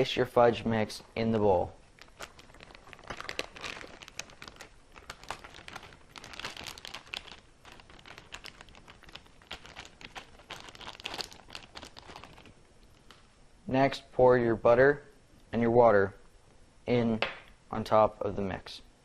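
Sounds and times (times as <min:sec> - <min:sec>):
packaging crinkling: 0:01.9 - 0:13.3.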